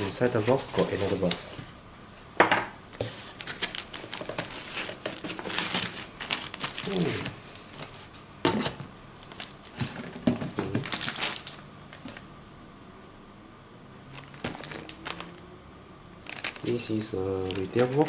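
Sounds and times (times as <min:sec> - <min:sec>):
cardboard rustling and crinkling: 0:00.0 - 0:01.7, 0:03.0 - 0:12.2, 0:14.1 - 0:15.4, 0:16.2 - 0:18.0.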